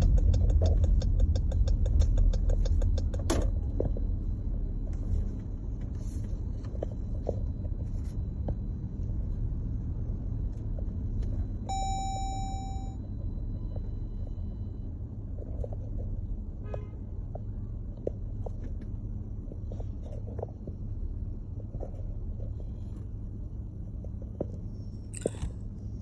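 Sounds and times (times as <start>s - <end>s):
vehicle rumble in motion: 0.0s - 26.0s
brief pitched tone: 11.7s - 13.0s.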